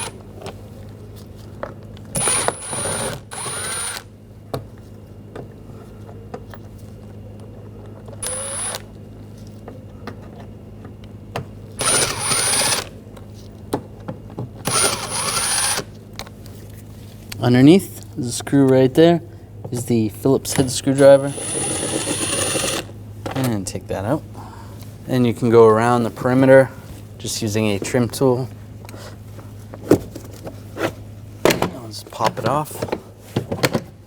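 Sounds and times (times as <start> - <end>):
power screwdriver whirring: 2.2 - 4.1, 8.2 - 8.9, 11.8 - 13.0, 14.7 - 15.9, 21.2 - 22.9.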